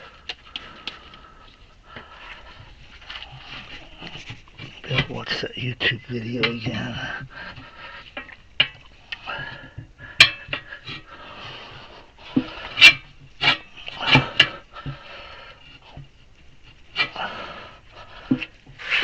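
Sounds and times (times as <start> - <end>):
heavy breathing: 0.0 - 4.9, 7.0 - 19.0
tire irons clanking on metal: 6.2 - 19.0.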